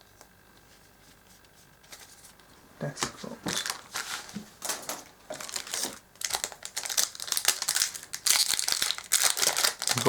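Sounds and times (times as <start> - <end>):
foil wrappers crinkling: 3.4 - 10.0.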